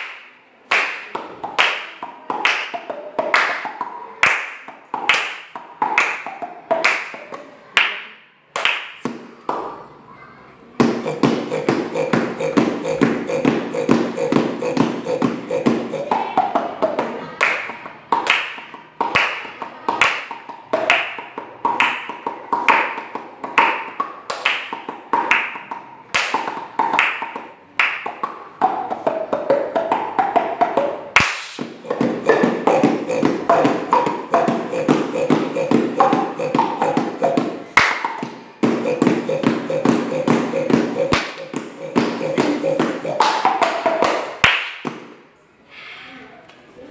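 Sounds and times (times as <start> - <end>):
rhythmic tapping: 10.8 - 17.1, 27.2 - 45.1.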